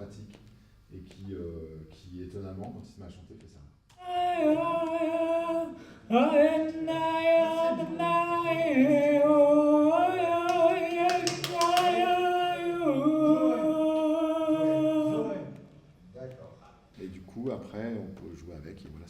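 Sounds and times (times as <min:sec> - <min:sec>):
man singing long held notes: 0:04.0 - 0:15.3.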